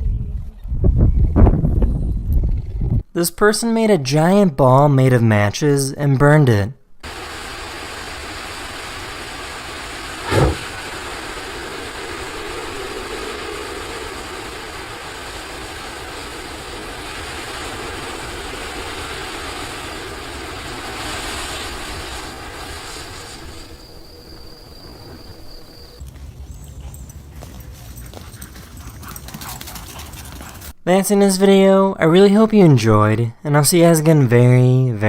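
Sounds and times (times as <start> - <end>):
matches flaring and burning: 7.0 - 26.0.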